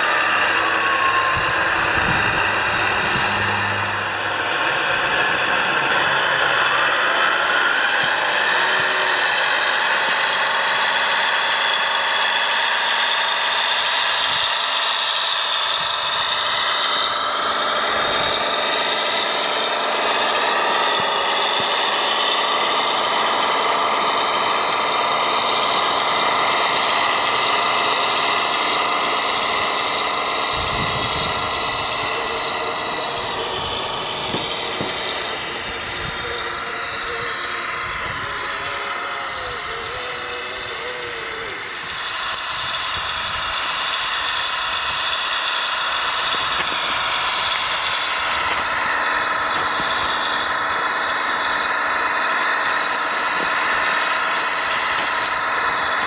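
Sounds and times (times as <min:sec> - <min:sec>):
model trucks whining: 0:00.0 - 0:56.0.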